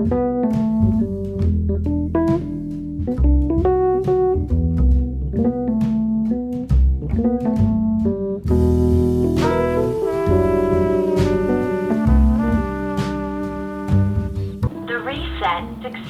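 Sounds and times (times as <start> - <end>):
bass line: 0.0 - 15.9
plucked jazz guitar: 0.0 - 16.0
horn chord: 8.6 - 16.0.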